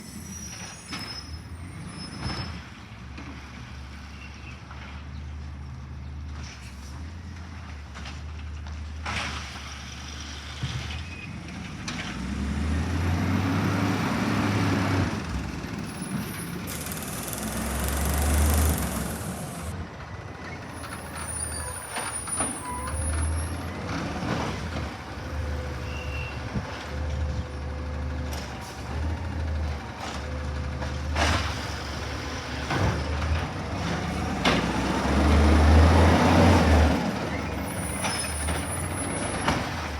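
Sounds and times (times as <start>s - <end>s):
garbage truck engine running: 13.1s - 25.3s
short noisy bursts: 15.9s - 19.7s.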